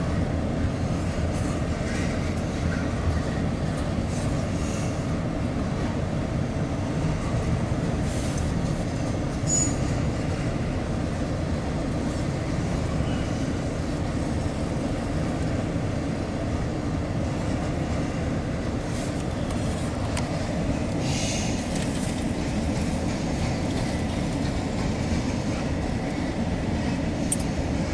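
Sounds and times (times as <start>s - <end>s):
train wheels rumbling on rail: 0.0s - 27.9s
high wheel squeals: 9.5s - 10.0s.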